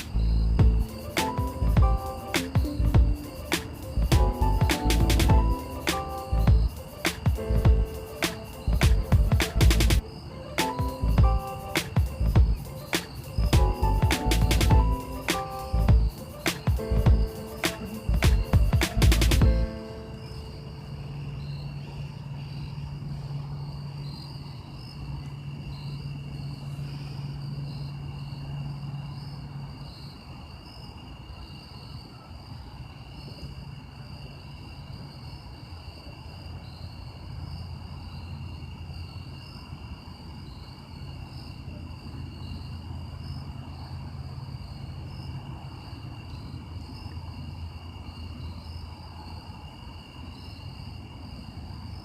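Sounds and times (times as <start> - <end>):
insects trilling: 0.0 - 52.0
low motor hum: 0.2 - 0.9, 6.4 - 6.7.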